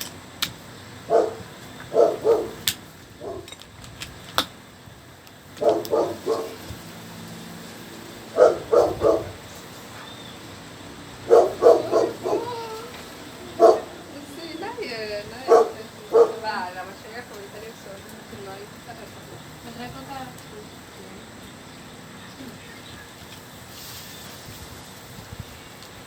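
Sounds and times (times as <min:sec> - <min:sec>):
dog barking: 0:01.1 - 0:02.6, 0:03.2 - 0:03.5, 0:05.6 - 0:06.6, 0:08.3 - 0:09.4, 0:11.2 - 0:12.7, 0:13.4 - 0:14.1, 0:15.4 - 0:16.5.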